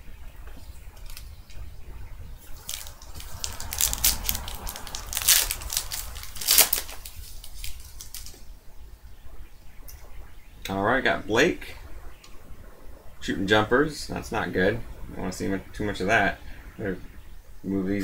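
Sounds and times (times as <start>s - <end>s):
wrappers crinkling: 2.4s - 8.4s.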